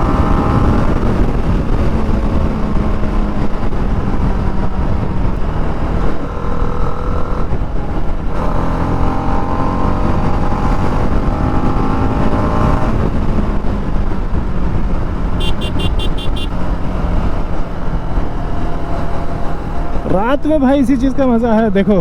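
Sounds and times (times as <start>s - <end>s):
motorcycle engine accelerating: 0.0s - 20.2s
short high beeps: 15.4s - 16.5s.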